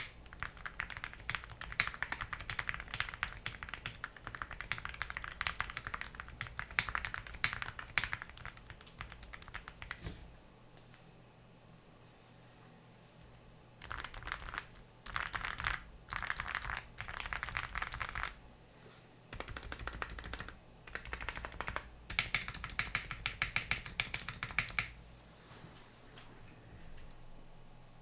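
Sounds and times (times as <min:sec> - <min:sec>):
mechanical keyboard typing: 0:00.0 - 0:10.0, 0:13.8 - 0:18.4, 0:19.3 - 0:25.0.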